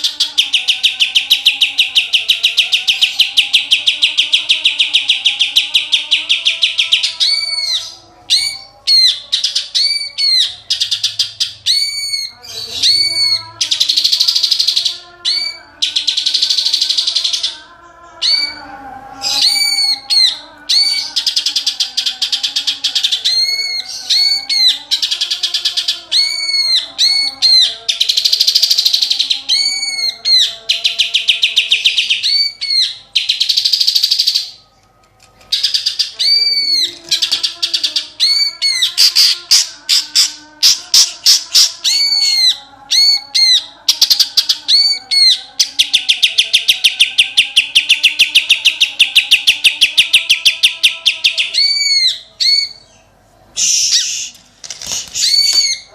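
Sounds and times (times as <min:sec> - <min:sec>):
bird singing whistles and trills: 0:55.1 - 0:55.9.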